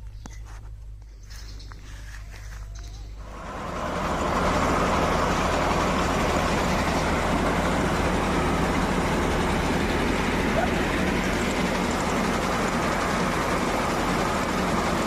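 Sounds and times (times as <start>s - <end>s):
large engine running: 2.0s - 15.0s.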